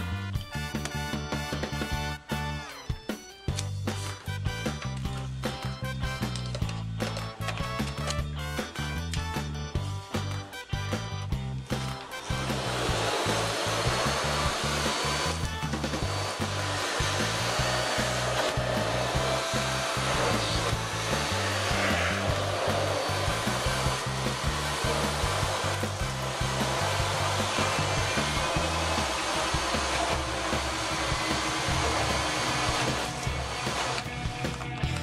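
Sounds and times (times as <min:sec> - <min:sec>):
vacuum cleaner running: 0:11.6 - 0:35.0.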